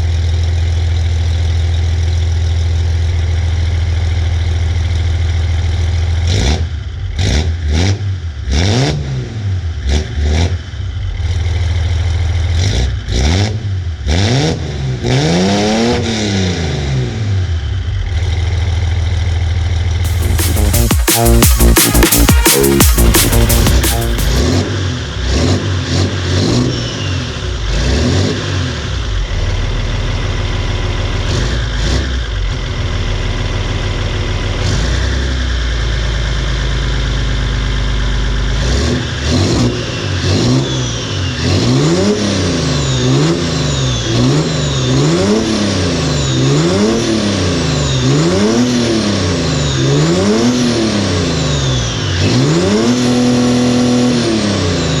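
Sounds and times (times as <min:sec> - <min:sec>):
diesel engine revving: 0:20.0 - 0:29.6, 0:30.2 - 0:55.0.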